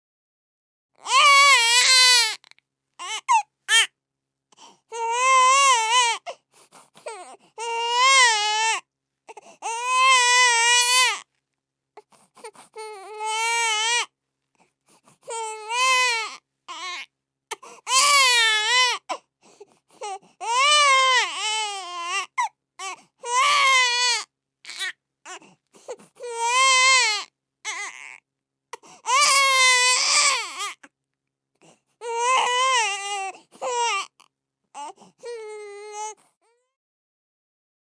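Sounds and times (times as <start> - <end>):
baby crying: 1.0 - 3.9, 4.9 - 6.4, 7.0 - 11.3, 12.4 - 14.1, 15.2 - 19.2, 20.0 - 28.2, 29.0 - 30.9, 32.0 - 34.2, 34.8 - 36.6.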